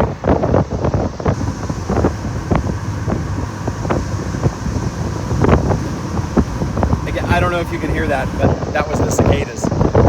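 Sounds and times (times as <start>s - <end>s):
road and wind noise: 0.0s - 10.0s
cicada chorus drone: 1.4s - 8.7s.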